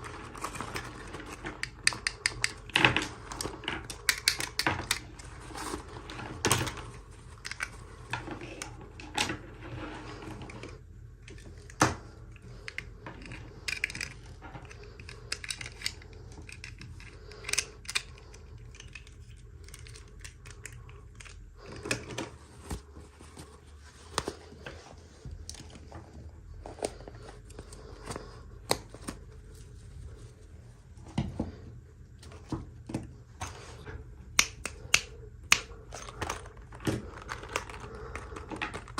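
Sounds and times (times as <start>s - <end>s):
toy packaging clicks and taps: 0.7s - 5.3s, 11.2s - 22.0s, 34.4s - 38.9s
packaging rustling: 35.8s - 38.9s.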